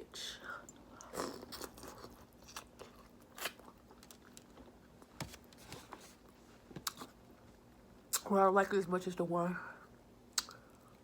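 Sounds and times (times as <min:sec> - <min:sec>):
person chewing food: 0:01.0 - 0:05.1.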